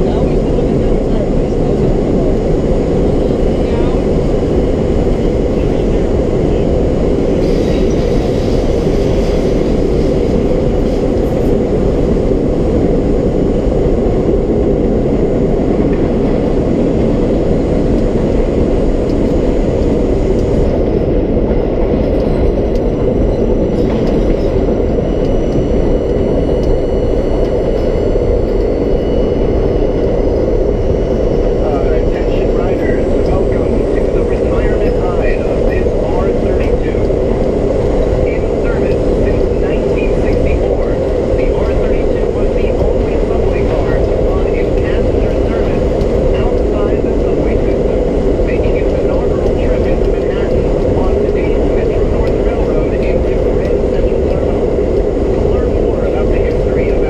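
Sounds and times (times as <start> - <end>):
subway train rumble: 0.0 - 57.0.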